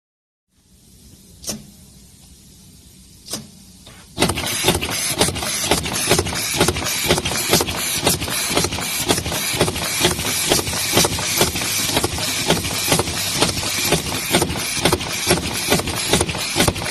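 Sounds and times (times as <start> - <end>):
machine running loudly: 4.2 - 16.9
sharp repeated clacks: 4.2 - 16.9.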